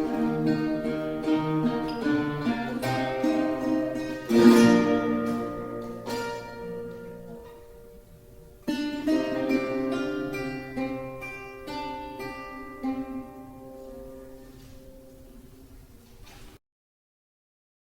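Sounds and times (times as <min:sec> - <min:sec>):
ringing guitar chord: 0:00.0 - 0:08.0
classical guitars playing: 0:00.0 - 0:16.6.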